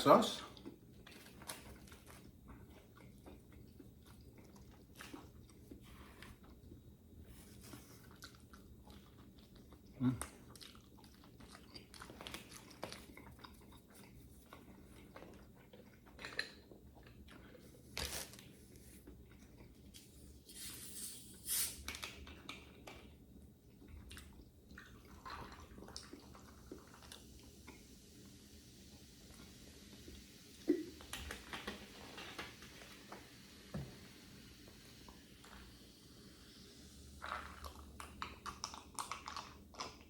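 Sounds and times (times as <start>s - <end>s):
person chewing food: 0.6s - 20.4s, 21.8s - 27.9s, 37.2s - 40.0s.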